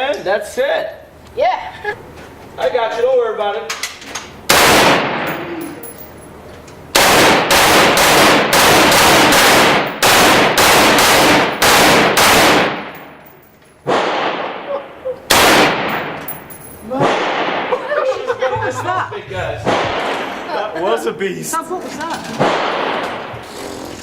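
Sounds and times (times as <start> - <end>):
rapid gunfire: 4.5 - 5.3, 7.0 - 13.0, 15.3 - 16.2, 17.0 - 17.7, 22.4 - 23.4
single gunshots: 4.5 - 5.5, 7.0 - 13.1, 13.8 - 14.7, 15.3 - 16.3, 17.0 - 17.8, 19.6 - 20.5, 22.4 - 23.3.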